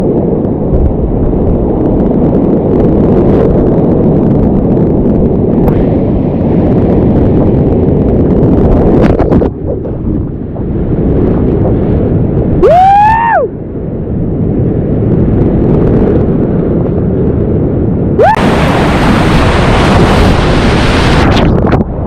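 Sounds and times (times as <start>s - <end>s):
rushing whitewater roar: 18.2s - 21.6s.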